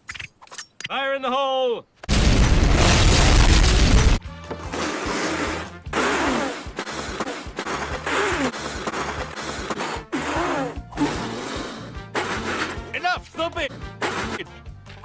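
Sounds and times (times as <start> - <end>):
animated film soundtrack music: 3.4 - 15.0.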